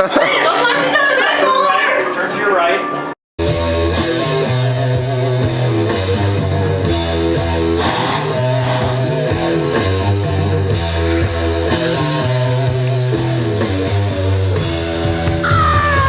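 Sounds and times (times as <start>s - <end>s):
drums: 3.0s - 16.0s
rock music with guitar: 3.4s - 16.0s
steady bass line: 3.4s - 16.0s.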